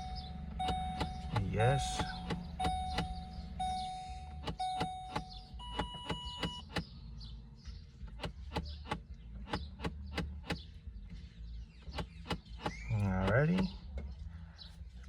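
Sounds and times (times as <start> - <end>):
higher electronic beep: 0.0 - 6.4
long electronic beeps: 0.0 - 6.6
steady ticking clicks: 0.0 - 6.9.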